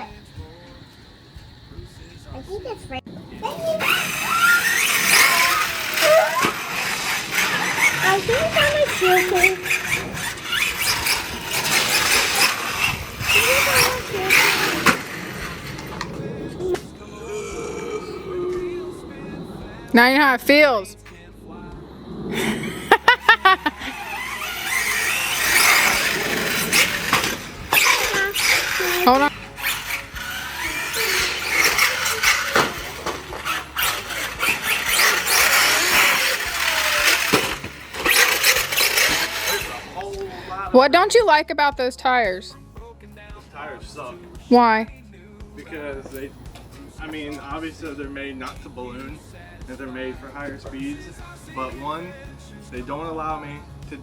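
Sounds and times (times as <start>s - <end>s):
rc truck motor surging: 0.0s - 41.3s
tyre and drivetrain noise: 0.0s - 42.4s, 43.3s - 54.0s.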